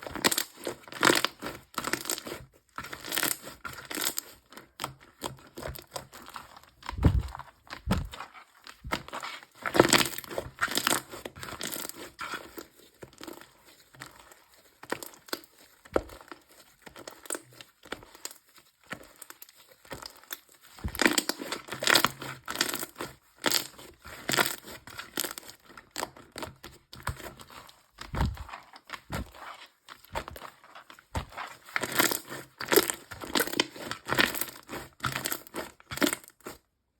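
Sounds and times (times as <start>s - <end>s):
slime being squished: 0.0s - 36.6s
soft low thuds: 7.0s - 8.2s.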